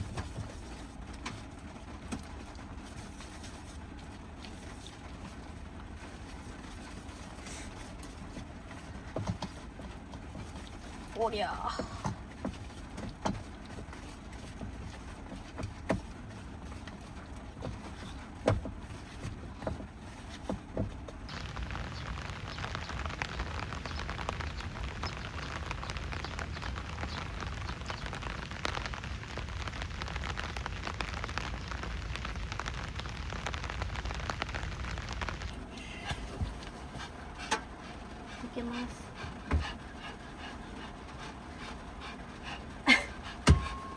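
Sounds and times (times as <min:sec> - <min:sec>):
heavy rain pattering: 0:21.2 - 0:39.8.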